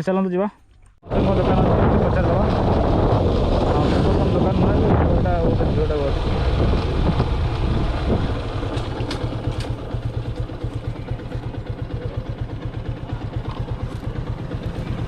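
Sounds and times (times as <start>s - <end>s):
motorcycle engine idling: 6.1s - 15.0s.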